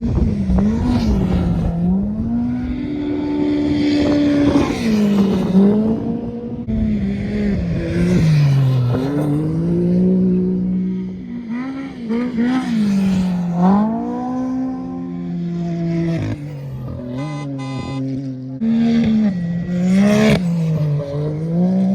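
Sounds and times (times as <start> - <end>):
race vehicle engines revving: 0.0 - 21.9.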